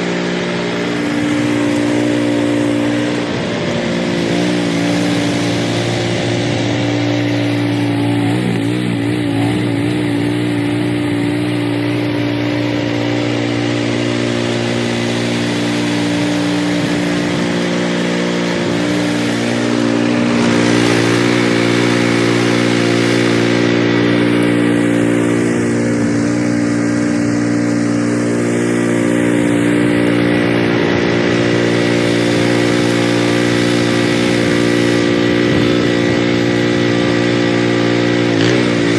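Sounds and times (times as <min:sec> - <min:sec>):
snowblower engine hum: 0:00.0 - 0:38.9
snowblower rushing noise: 0:00.0 - 0:38.9.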